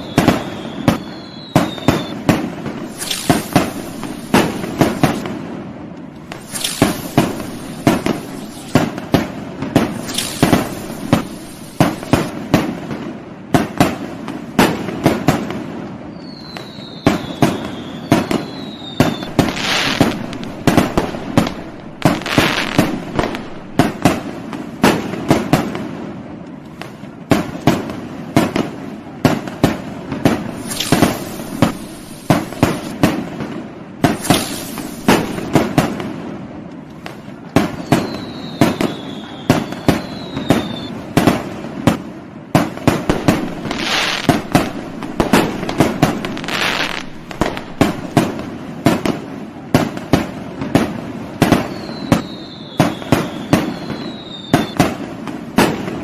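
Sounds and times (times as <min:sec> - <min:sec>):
short falling whistles: 0:00.0 - 0:05.2, 0:06.4 - 0:08.9, 0:16.1 - 0:24.0, 0:30.6 - 0:32.9, 0:37.8 - 0:41.0, 0:51.6 - 0:54.8
fireworks fizzing hisses: 0:00.0 - 0:25.8, 0:29.4 - 0:50.3, 0:51.4 - 0:56.0
fireworks bangs and pops: 0:00.0 - 0:56.0.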